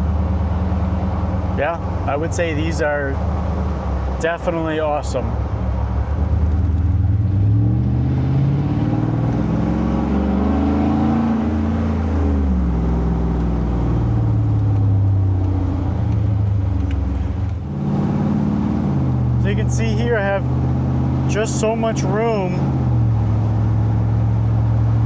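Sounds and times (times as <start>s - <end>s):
car engine and exhaust while driving: 0.0s - 25.0s.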